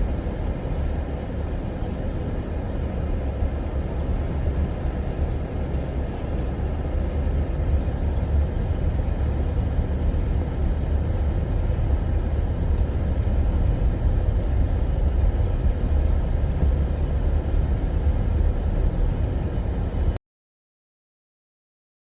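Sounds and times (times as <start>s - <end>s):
steady low rumble: 0.0s - 20.2s.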